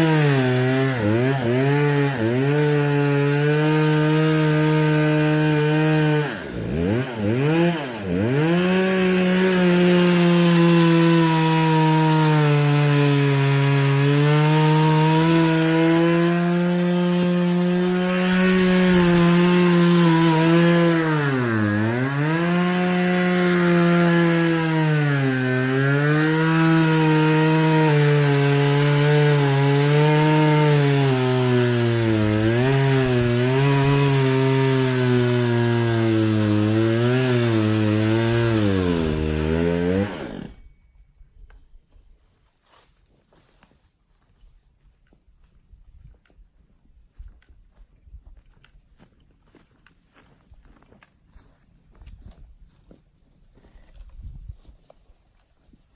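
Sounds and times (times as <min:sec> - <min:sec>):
chainsaw cutting wood: 0:00.0 - 0:40.7.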